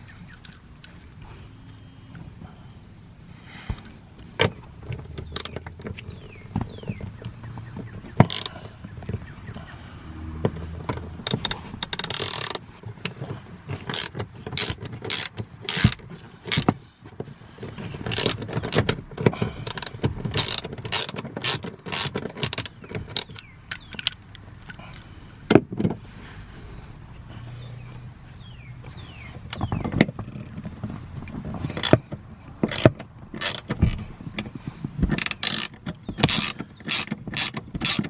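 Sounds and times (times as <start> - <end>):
hand ratchet clicking: 4.9 - 6.0, 8.1 - 8.7, 10.5 - 16.8, 18.0 - 24.8, 31.6 - 33.9, 35.1 - 38.0.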